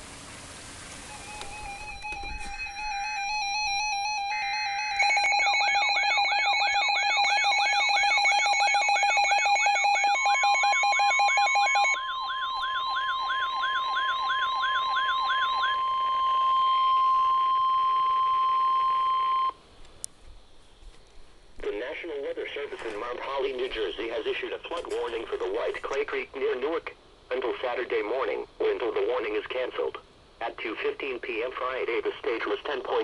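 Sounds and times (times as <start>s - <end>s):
steady warning alarm tone: 0.9s - 19.6s
rapid beeping: 1.0s - 19.5s
warbling alarm tones: 1.0s - 19.6s.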